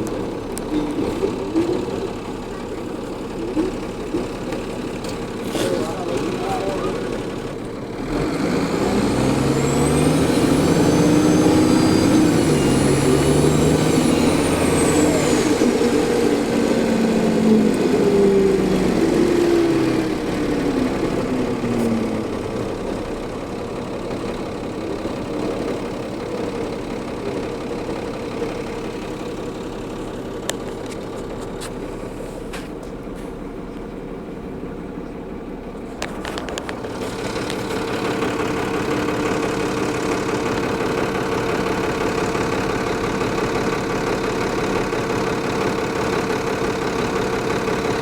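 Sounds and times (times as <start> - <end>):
bus diesel engine accelerating: 0.0 - 48.0
high turbocharger whine: 8.0 - 24.0.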